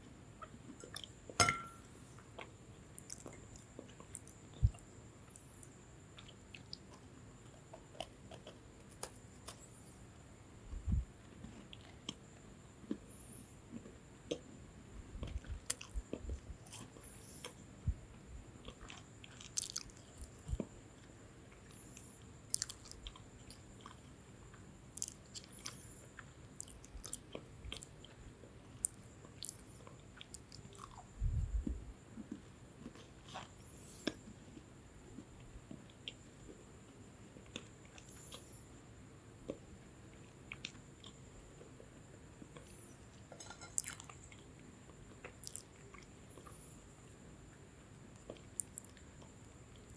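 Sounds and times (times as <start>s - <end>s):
biscuit crunching while chewing: 2.0s - 10.1s, 15.2s - 38.6s, 43.4s - 46.8s, 47.5s - 49.9s.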